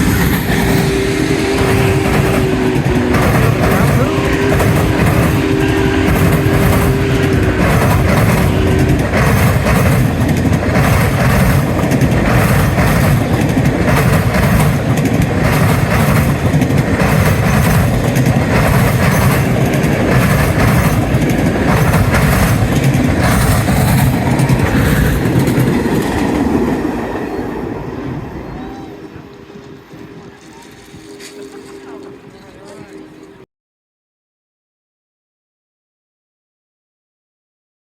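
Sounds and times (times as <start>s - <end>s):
steam whistle chord: 0.0s - 9.5s
steam locomotive rumble and clatter: 0.0s - 33.5s.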